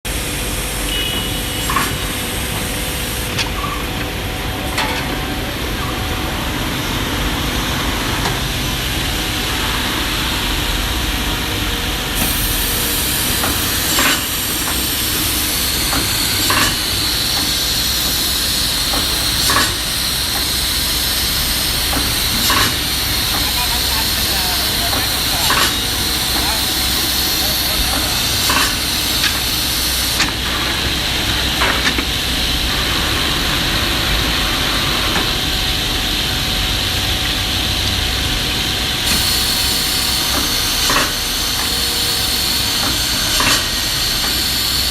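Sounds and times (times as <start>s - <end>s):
woodworking machine hissing: 8.7s - 36.5s, 38.6s - 44.9s
machine clicking and clunking: 21.8s - 23.6s.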